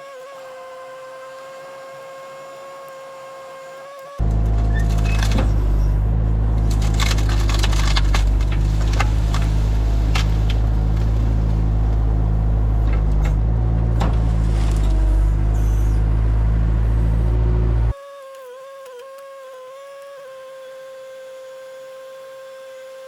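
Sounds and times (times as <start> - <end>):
engine running: 4.1 - 18.0
wood cracking and splintering: 4.2 - 5.8, 6.5 - 15.0.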